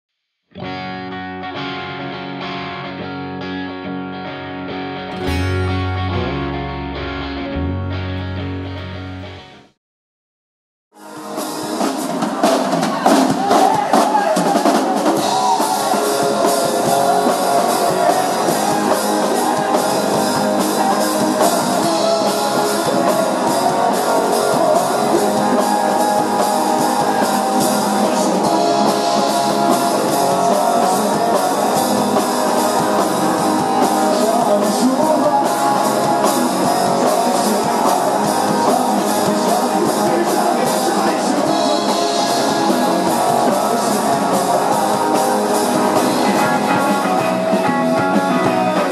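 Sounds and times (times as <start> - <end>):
rock band playing: 0.6 - 9.7, 11.0 - 48.9
drum kit beat: 5.1 - 6.6, 11.2 - 48.9.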